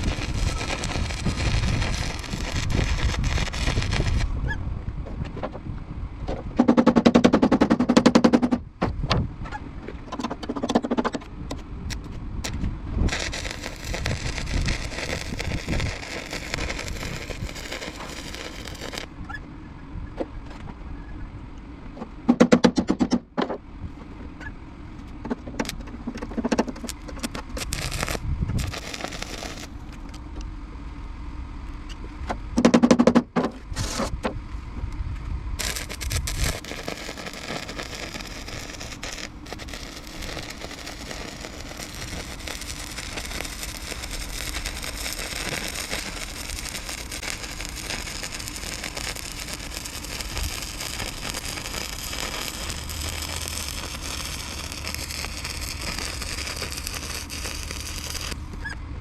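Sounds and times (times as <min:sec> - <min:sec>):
arc welding crackling buzz: 0:00.0 - 0:04.4, 0:12.4 - 0:19.2, 0:26.3 - 0:30.0, 0:35.6 - 0:58.6.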